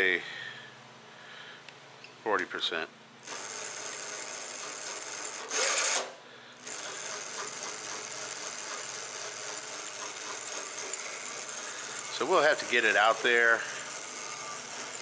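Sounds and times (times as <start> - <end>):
electric motor running chain drive: 3.2 - 15.0.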